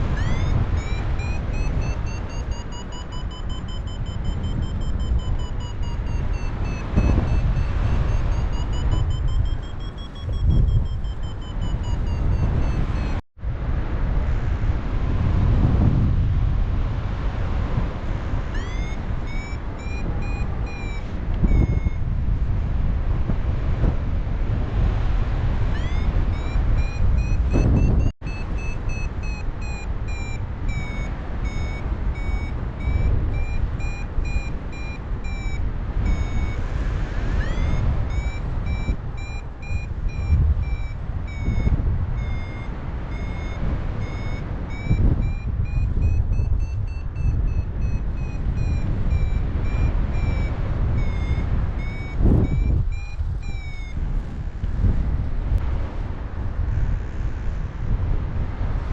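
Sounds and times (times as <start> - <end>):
variometer short high beeps: 0.0 - 13.2, 18.4 - 22.1, 25.7 - 54.5
wind rushing on microphone: 0.0 - 58.9.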